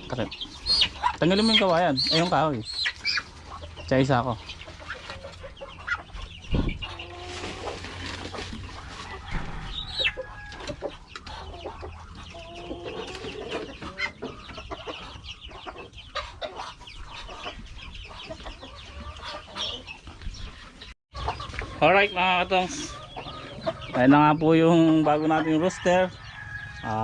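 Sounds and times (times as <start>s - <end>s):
chickens clucking and squawking: 0.0s - 27.0s.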